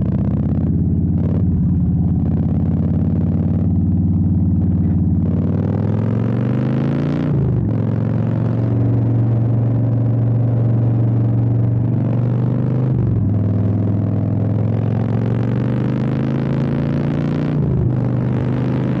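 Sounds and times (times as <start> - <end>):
motorcycle engine running: 0.0 - 19.0.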